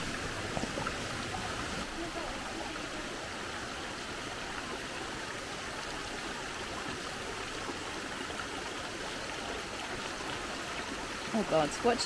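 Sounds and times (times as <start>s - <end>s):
water rushing in a rocky river: 0.0s - 12.0s.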